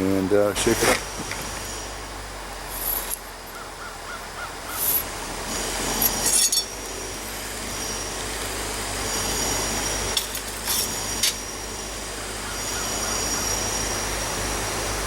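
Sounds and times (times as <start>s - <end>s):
thin high tone: 0.0s - 3.9s, 4.6s - 15.0s
steady hiss: 0.0s - 15.0s
metal clinking with ringing: 4.8s - 15.0s.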